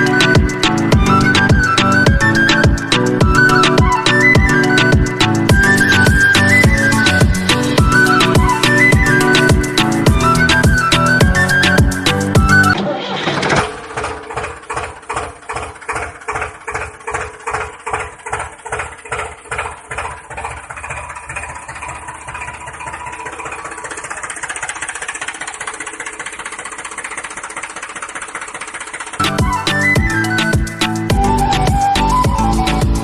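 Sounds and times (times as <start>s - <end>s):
music: 0.0s - 12.8s, 29.2s - 33.0s
engine chugging: 0.0s - 33.0s.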